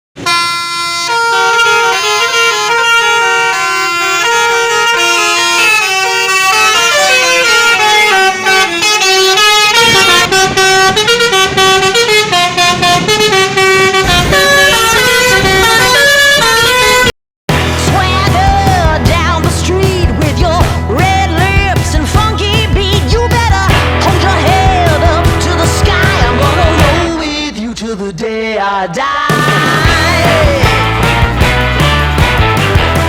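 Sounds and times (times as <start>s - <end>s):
musical air horn melody: 0.2s - 17.8s, 23.7s - 27.4s, 29.6s - 33.0s
low rumble: 29.3s - 33.0s.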